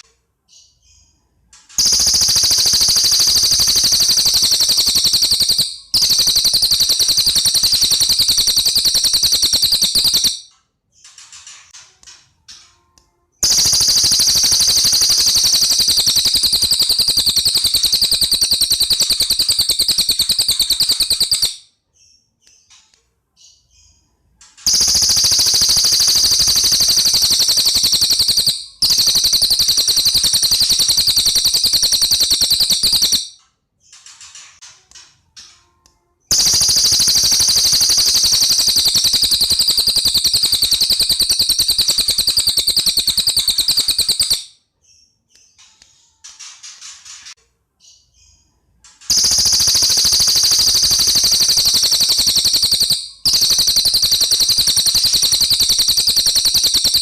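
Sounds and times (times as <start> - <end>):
songbird rapid trill: 1.8 - 10.4, 13.4 - 21.6, 24.7 - 33.3, 36.3 - 44.5, 49.1 - 57.0.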